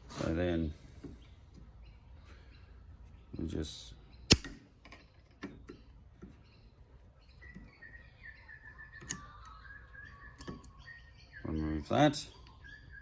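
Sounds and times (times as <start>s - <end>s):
sharp metallic snap: 4.3s - 4.7s.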